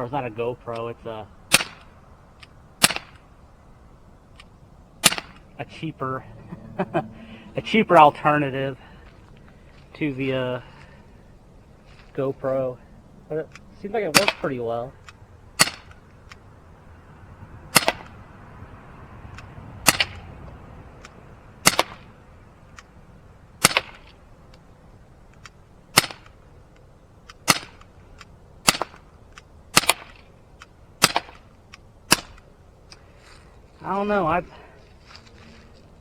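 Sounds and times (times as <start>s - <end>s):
bb pistol shots cracking: 1.5s - 1.9s, 2.8s - 3.2s, 5.0s - 5.4s, 14.2s - 14.5s, 15.6s - 16.0s, 17.7s - 18.1s, 21.6s - 22.0s, 23.6s - 24.0s, 27.4s - 27.9s, 28.6s - 29.1s, 29.7s - 30.2s, 31.0s - 31.5s, 32.1s - 32.4s.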